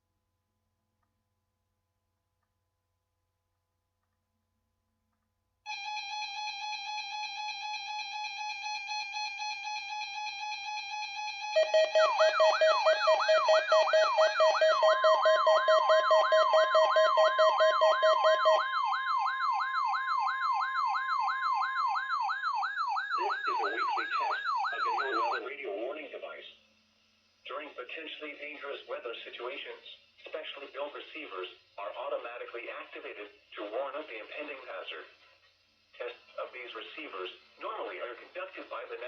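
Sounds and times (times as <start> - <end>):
siren sweeping up in pitch: 5.7 - 25.5
rapidly pulsing alarm tone: 5.7 - 25.6
steady high tone: 5.7 - 26.2.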